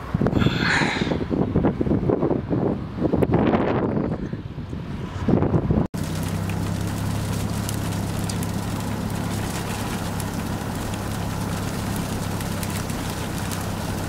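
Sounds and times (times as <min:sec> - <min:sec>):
engine idling: 0:06.0 - 0:14.0.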